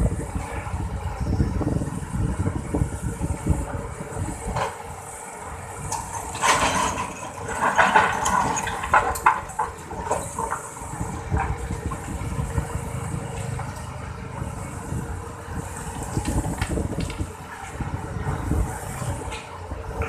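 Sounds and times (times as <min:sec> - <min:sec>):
excavator diesel engine running: 0:00.0 - 0:20.0
earth and stones clattering: 0:06.3 - 0:10.6.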